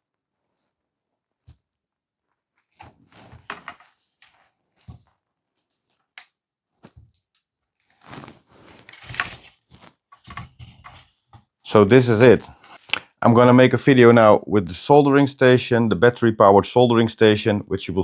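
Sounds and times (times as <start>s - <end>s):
rustling and scraping: 1.4s - 7.2s, 7.8s - 11.6s.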